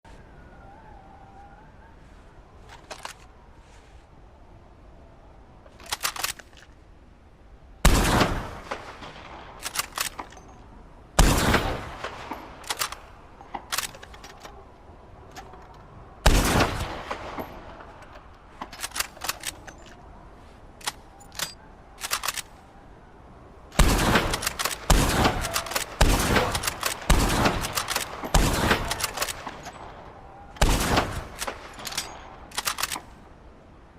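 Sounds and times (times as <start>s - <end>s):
metallic clicks of rifle bolt: 2.6s - 3.3s, 5.6s - 6.8s, 9.6s - 10.7s, 12.2s - 14.6s, 16.8s - 20.0s, 20.8s - 22.6s, 24.2s - 29.9s, 30.6s - 33.3s
rifle shots: 7.8s - 10.1s, 11.2s - 13.0s, 16.2s - 17.9s, 23.8s - 29.8s, 30.6s - 33.0s.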